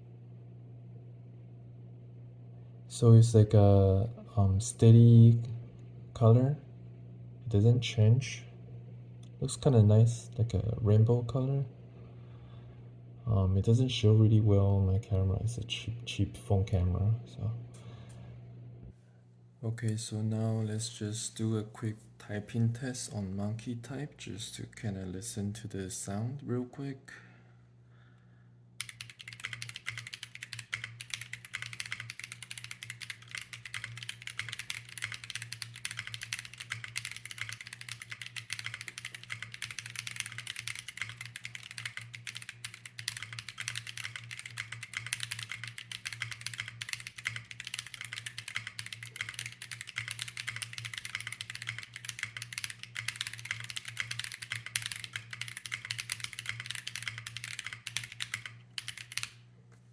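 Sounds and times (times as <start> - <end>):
steady low hum: 0.0 - 59.9
mechanical keyboard typing: 28.8 - 59.4.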